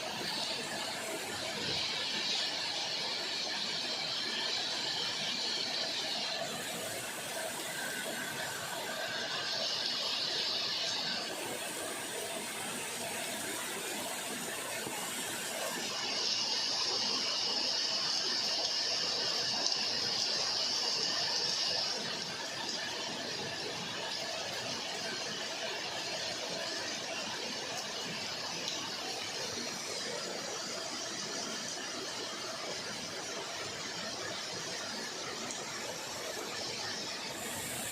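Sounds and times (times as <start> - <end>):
heavy rain falling: 0.0 - 17.1, 34.3 - 37.9.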